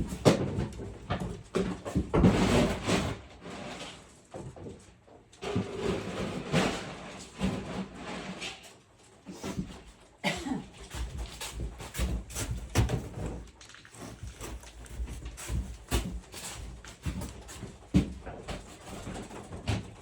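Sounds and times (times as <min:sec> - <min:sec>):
dry food rustling and scraping: 0:10.9 - 0:19.2.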